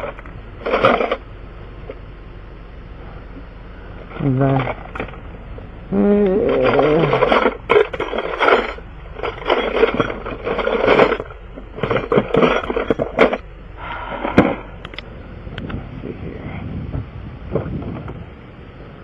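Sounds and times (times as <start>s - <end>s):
metal tools clattering and scraping: 0.0s - 1.2s, 6.4s - 13.4s
metal sockets clinking: 6.6s - 13.4s.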